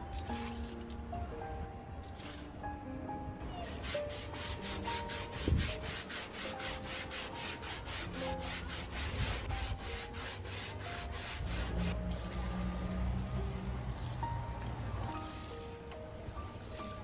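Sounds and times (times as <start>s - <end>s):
brush scrubbing wet carpet: 3.6s - 13.0s.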